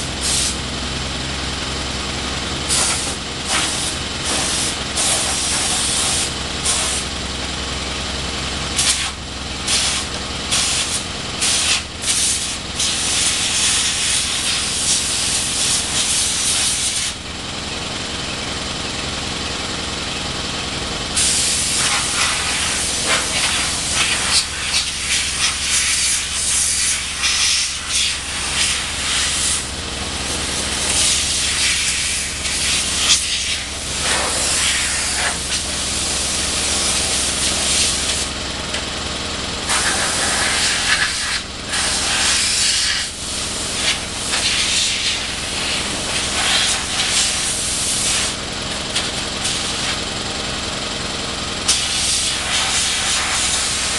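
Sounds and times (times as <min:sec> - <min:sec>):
low machine hum: 0:00.0 - 0:53.9
compressed air hissing from nozzle: 0:00.2 - 0:00.6, 0:02.7 - 0:07.1, 0:08.8 - 0:17.2, 0:21.2 - 0:29.7, 0:30.4 - 0:38.3, 0:39.7 - 0:48.4, 0:49.4 - 0:50.0, 0:51.7 - 0:53.9.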